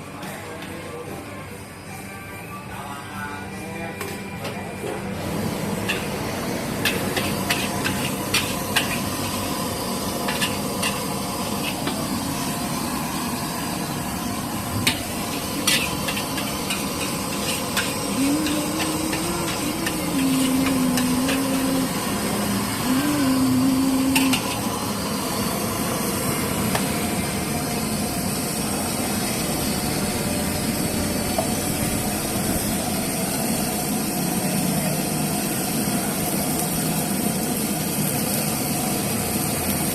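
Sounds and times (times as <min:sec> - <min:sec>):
rice sizzling in a wok: 0:05.1 - 0:39.9
low wavering tone: 0:18.0 - 0:24.8.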